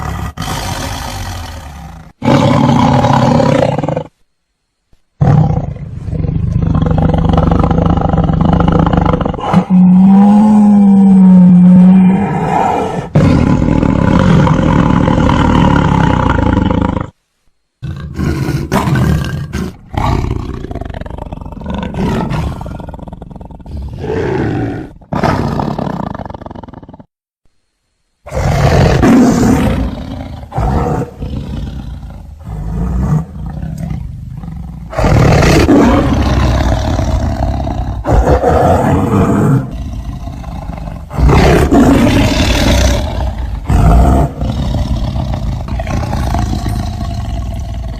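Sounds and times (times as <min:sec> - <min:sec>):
tiger roaring and growling: 0:00.0 - 0:04.2, 0:05.2 - 0:17.2, 0:17.8 - 0:27.1, 0:28.3 - 0:47.9.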